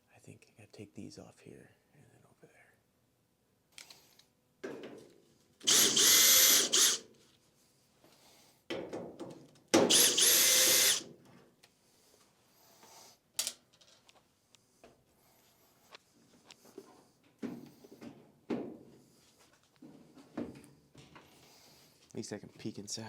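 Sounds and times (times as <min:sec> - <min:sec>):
power drill whining: 0:05.6 - 0:07.0, 0:09.9 - 0:11.1.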